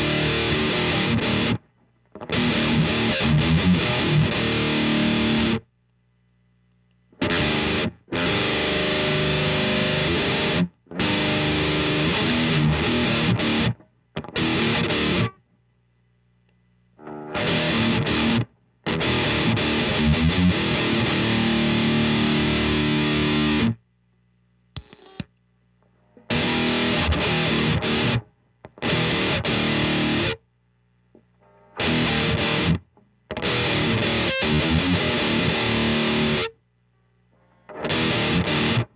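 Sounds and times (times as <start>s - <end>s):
distorted electric guitar riffs: 0.0s - 5.7s, 7.2s - 15.4s, 17.0s - 23.8s, 26.2s - 30.4s, 31.4s - 36.6s, 37.7s - 38.9s
faint low hum: 5.6s - 7.2s, 23.8s - 26.3s, 36.5s - 37.8s.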